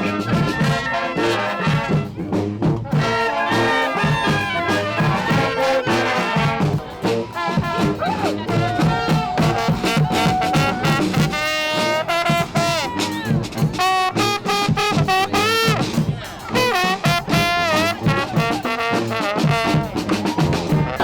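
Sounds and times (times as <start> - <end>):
bass line: 0.0 - 21.0
horns playing a melody: 0.0 - 21.0
drum hits: 4.0 - 21.0.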